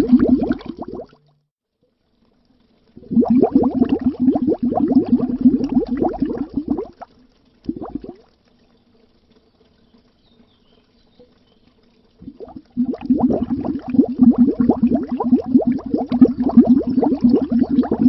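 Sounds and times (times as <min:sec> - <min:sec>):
air bubbles gurgling underwater: 0:00.0 - 0:01.2, 0:03.0 - 0:08.3, 0:12.2 - 0:18.0.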